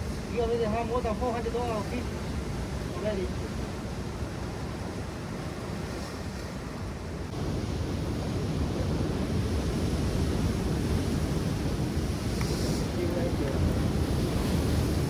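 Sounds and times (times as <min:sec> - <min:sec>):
ocean surf: 0:00.0 - 0:15.0
wind buffeting microphone: 0:07.3 - 0:15.0.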